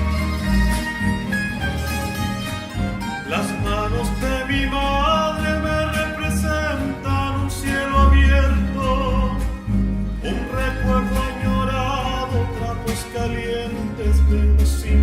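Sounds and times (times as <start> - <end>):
bass line: 0.0 - 15.0
plucked guitar: 0.0 - 15.0
person singing: 3.2 - 9.6, 10.2 - 15.0.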